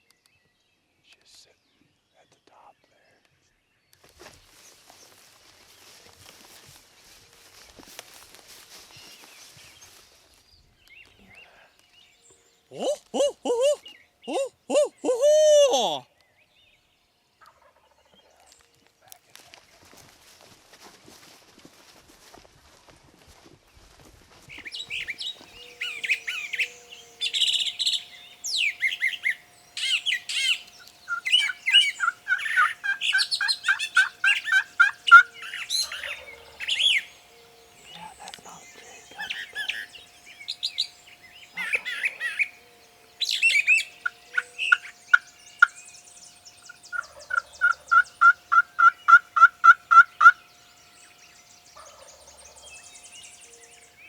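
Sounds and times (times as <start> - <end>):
songbirds singing: 0.0 - 19.8, 24.5 - 54.0
bird repeating evenly spaced notes: 24.6 - 54.0.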